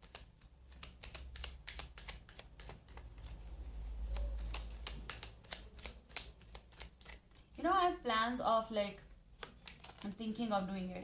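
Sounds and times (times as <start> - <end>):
cards being shuffled: 0.0 - 7.7, 9.3 - 10.4.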